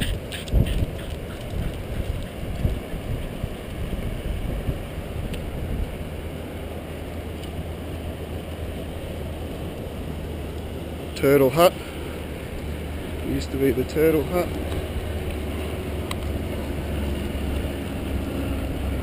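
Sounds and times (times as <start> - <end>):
wind buffeting microphone: 0.0 - 6.5.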